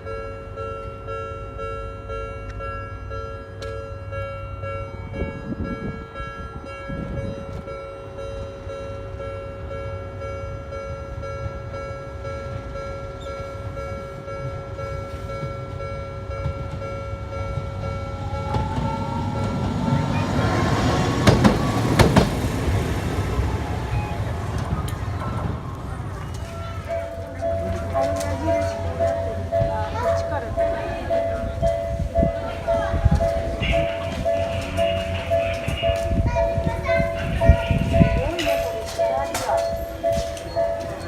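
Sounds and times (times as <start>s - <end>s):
railroad crossing bell ringing: 0.0s - 41.0s
train running with rising whine: 7.1s - 41.0s
train wheels clacking over joints: 15.3s - 22.9s, 24.4s - 41.0s.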